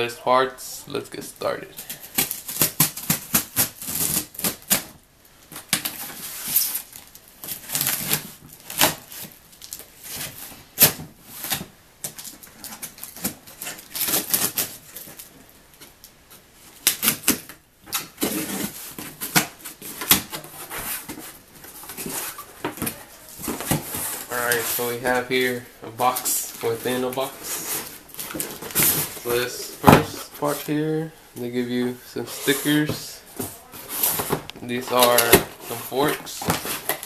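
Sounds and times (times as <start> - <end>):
cardboard rustling and scraping: 16.7 - 37.0.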